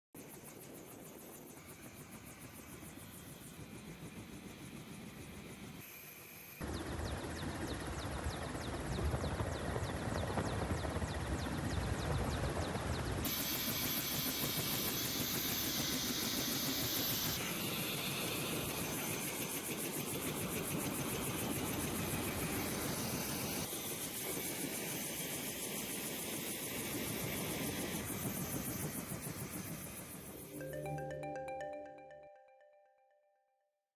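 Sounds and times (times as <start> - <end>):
large engine running with hiss: 13.2 - 30.5.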